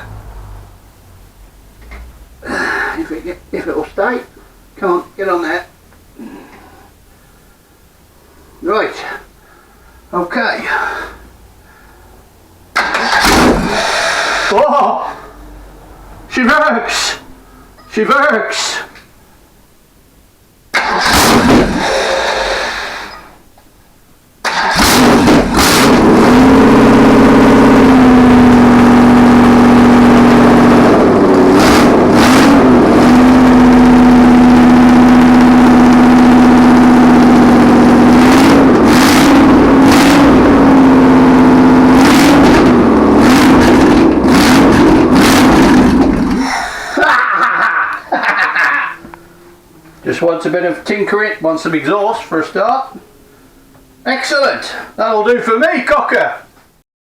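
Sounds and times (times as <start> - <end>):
engine throttle blips: 12.7 - 14.5, 20.7 - 23.2, 24.4 - 46.6, 48.6 - 54.1.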